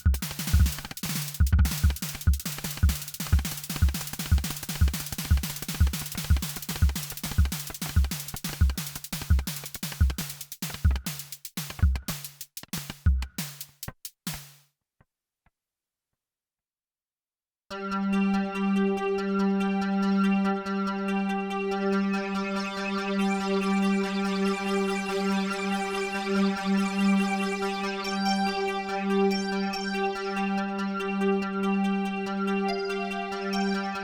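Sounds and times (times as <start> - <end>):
synthesizer deep thumps: 0.0 - 11.1.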